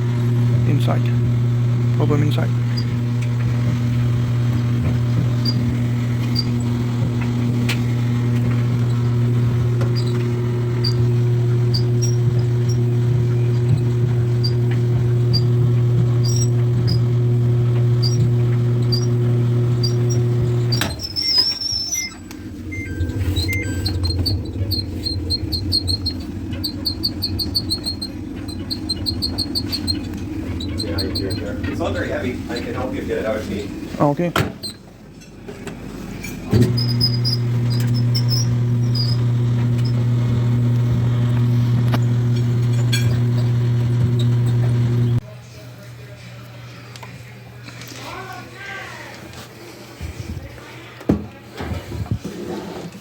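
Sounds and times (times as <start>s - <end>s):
dryer motor hum: 0.0s - 53.0s
high-pitched dryer squeak: 2.0s - 33.7s, 36.5s - 45.2s.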